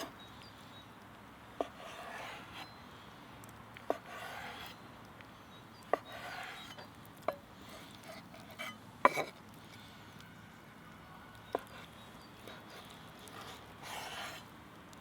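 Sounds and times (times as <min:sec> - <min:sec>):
light scraping: 0:01.6 - 0:02.7, 0:03.9 - 0:04.8, 0:05.9 - 0:09.9, 0:11.5 - 0:14.5.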